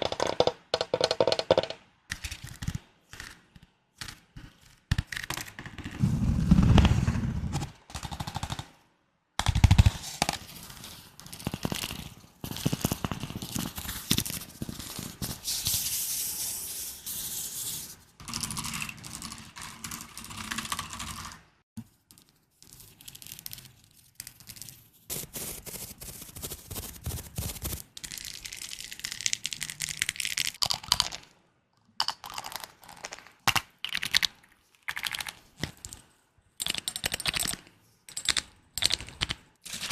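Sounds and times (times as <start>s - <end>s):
rapid tapping on objects: 0.0s - 5.7s.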